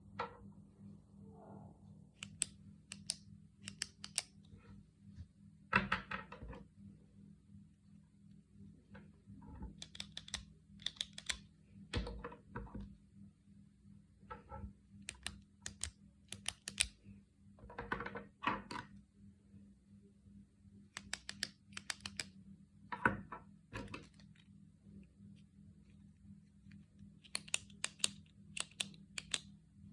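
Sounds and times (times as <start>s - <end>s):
faint low hum: 0.0s - 29.9s
retractable pen clicking: 2.2s - 4.4s, 9.8s - 11.4s, 15.0s - 17.0s, 20.9s - 22.3s, 26.7s - 29.5s.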